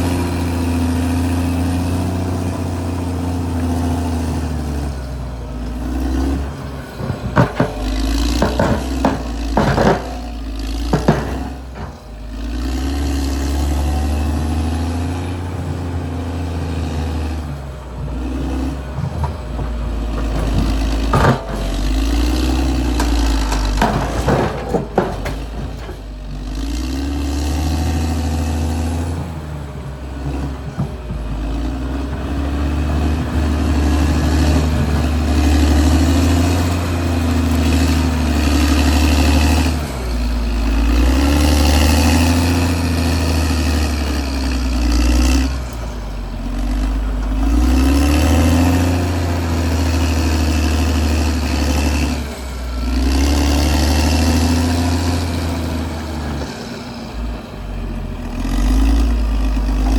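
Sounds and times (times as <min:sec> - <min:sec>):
bulldozer diesel engine: 0:00.0 - 0:59.9
sharp metallic clanks: 0:06.2 - 0:12.8, 0:18.8 - 0:26.7.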